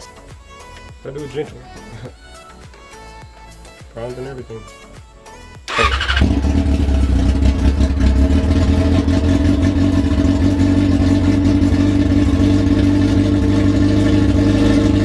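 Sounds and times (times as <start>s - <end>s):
motorcycle engine idling loudly: 5.7s - 15.0s.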